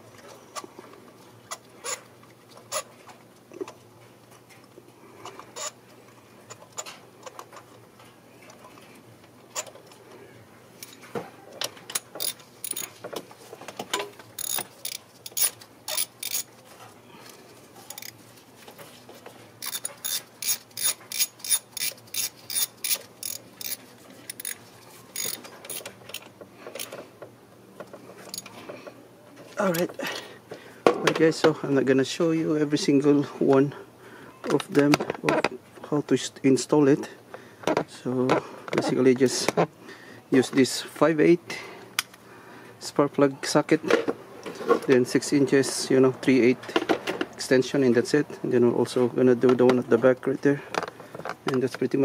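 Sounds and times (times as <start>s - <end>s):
socket ratchet clicking: 11.9s - 12.9s, 14.4s - 16.5s, 17.9s - 18.2s, 19.6s - 27.0s.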